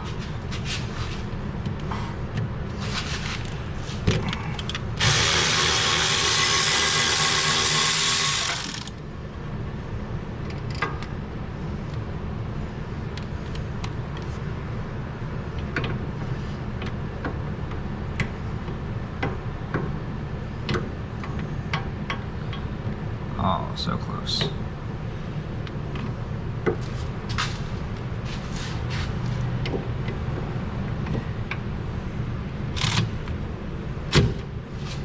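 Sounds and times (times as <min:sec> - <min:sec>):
low steady hum: 0:00.0 - 0:35.0
power tool running: 0:05.0 - 0:09.0.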